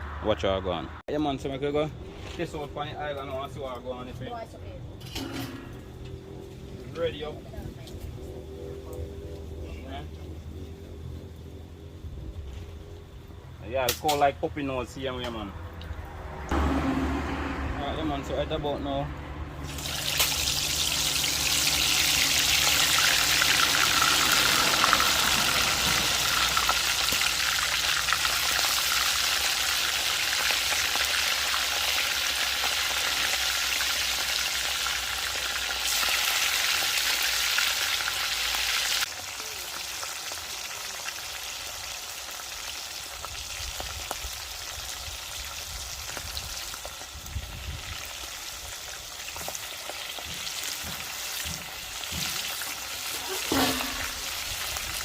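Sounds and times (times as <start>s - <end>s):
meat sizzling in hot oil: 19.6s - 55.0s.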